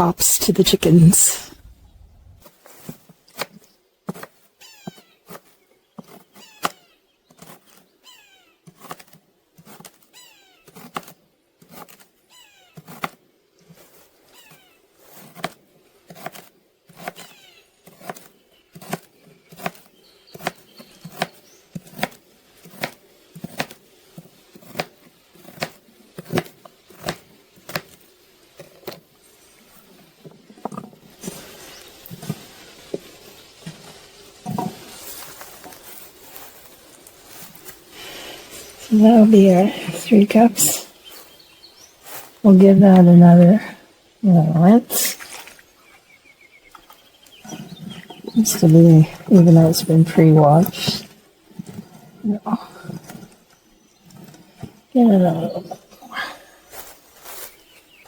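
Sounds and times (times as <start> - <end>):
faint bird chirps: 44.5 - 51.1.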